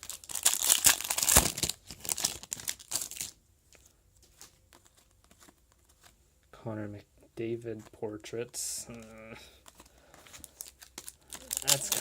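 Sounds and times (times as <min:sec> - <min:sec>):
foil wrapper crinkling: 0:00.0 - 0:03.4, 0:09.6 - 0:12.0
cards ticking: 0:07.7 - 0:12.0.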